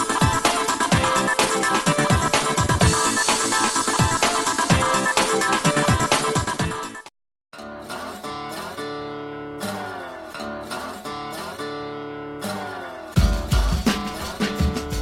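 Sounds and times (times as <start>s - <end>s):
drums and bass: 0.0s - 7.0s, 13.2s - 15.0s
electronic music: 0.0s - 7.1s
plucked acoustic guitar: 7.5s - 15.0s.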